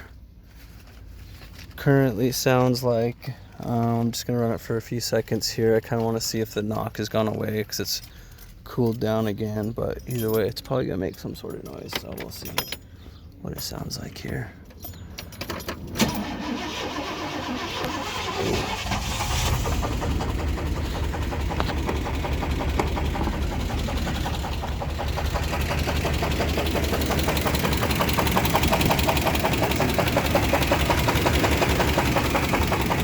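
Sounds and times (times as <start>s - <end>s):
engine cranking and catching: 7.3s - 33.0s
engine running with rod knock: 19.2s - 33.0s.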